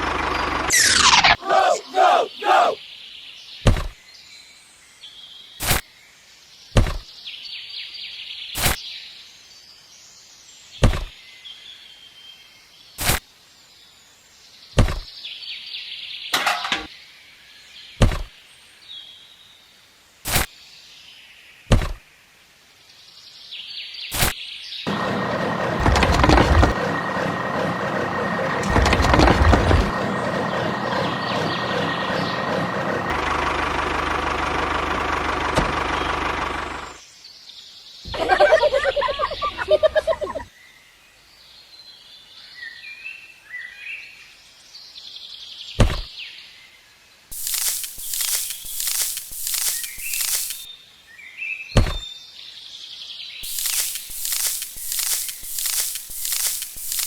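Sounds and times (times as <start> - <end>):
faint outdoor hiss: 2.8 - 24.8, 37.0 - 57.0
sharp knocks: 51.8 - 52.0.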